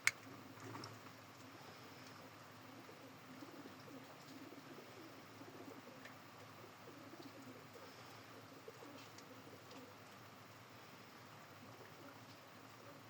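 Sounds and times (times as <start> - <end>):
pigeons cooing: 2.0 - 10.0, 11.6 - 13.0.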